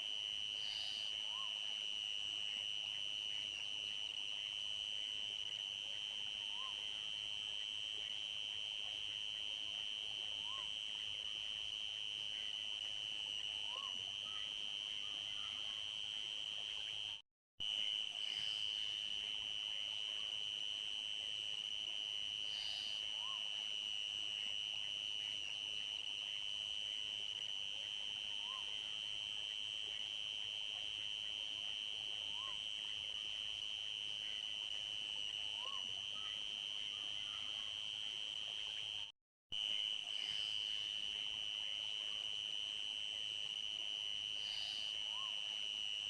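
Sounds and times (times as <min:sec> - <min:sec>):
crickets trilling: 0:10.4 - 0:24.0, 0:24.6 - 0:31.0, 0:31.7 - 0:39.0, 0:39.6 - 0:46.0.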